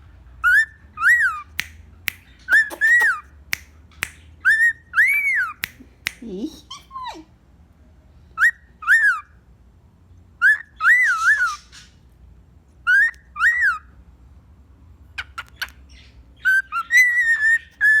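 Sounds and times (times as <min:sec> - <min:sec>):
clicky bird chirps: 0:01.6 - 0:04.3
cockatiel whistling: 0:02.1 - 0:03.2.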